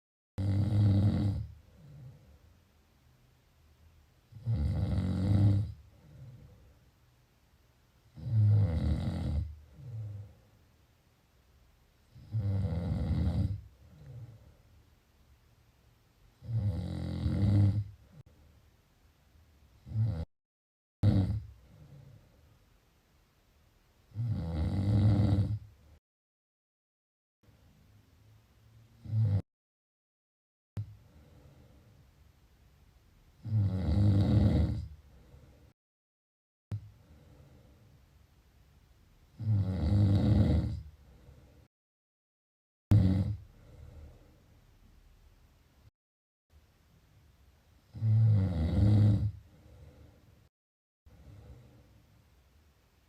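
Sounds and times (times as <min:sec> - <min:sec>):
sudden snort: 0:00.4 - 0:02.3, 0:21.0 - 0:21.9, 0:33.4 - 0:35.0, 0:39.4 - 0:40.9, 0:42.9 - 0:44.2, 0:47.9 - 0:49.4
loud low snore: 0:00.4 - 0:02.4, 0:04.3 - 0:06.6, 0:08.1 - 0:10.4, 0:12.1 - 0:14.5, 0:16.4 - 0:18.2, 0:19.8 - 0:20.3, 0:21.0 - 0:22.2, 0:24.1 - 0:25.7, 0:29.0 - 0:29.5, 0:33.4 - 0:35.0, 0:39.3 - 0:40.9, 0:42.9 - 0:44.3, 0:47.9 - 0:49.6
soft breath out: 0:01.6 - 0:02.6, 0:05.9 - 0:06.9, 0:30.8 - 0:32.1, 0:35.0 - 0:35.8, 0:36.8 - 0:38.0, 0:41.0 - 0:41.7, 0:43.5 - 0:44.6, 0:49.4 - 0:50.5.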